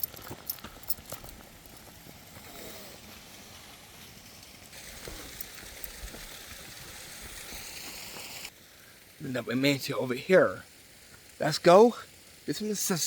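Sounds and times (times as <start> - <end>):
hiss of rushing air or water: 1.6 - 13.0.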